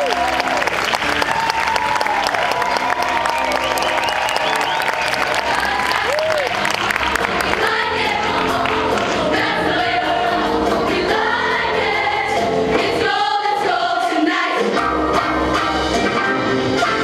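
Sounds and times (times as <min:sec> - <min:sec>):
musical accompaniment: 0:00.0 - 0:17.0
choir singing: 0:04.8 - 0:15.6.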